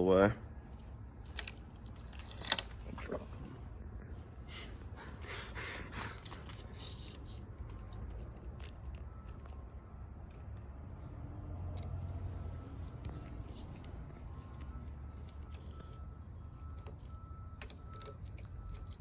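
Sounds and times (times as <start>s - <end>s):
low steady hum: 0.0s - 19.0s
small hardware clicks and scrapes: 1.2s - 2.9s, 6.2s - 10.8s, 11.7s - 19.0s.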